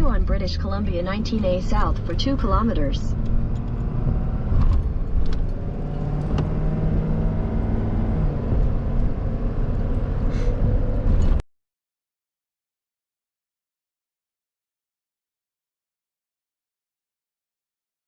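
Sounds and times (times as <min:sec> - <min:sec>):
road and tyre noise: 0:00.0 - 0:11.4
vehicle engine hum: 0:00.0 - 0:11.4.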